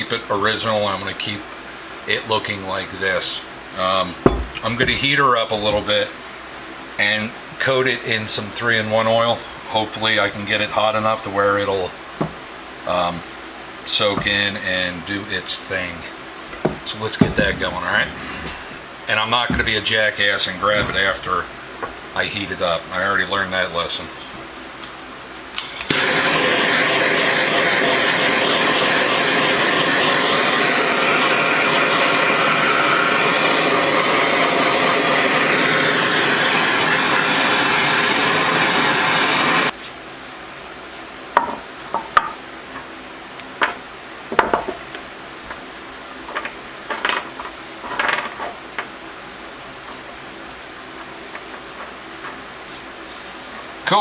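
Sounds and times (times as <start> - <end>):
propane torch hissing: 0.0 - 6.2, 9.3 - 24.4, 25.5 - 39.8, 44.6 - 48.6
light knocks and clinks: 4.3 - 5.1.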